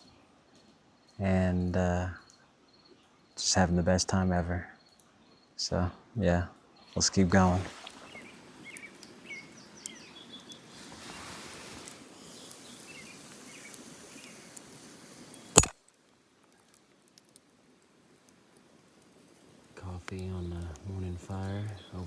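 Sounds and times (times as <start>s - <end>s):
small birds chirping: 6.8s - 15.7s, 18.5s - 22.0s
sharp click: 15.6s - 15.8s.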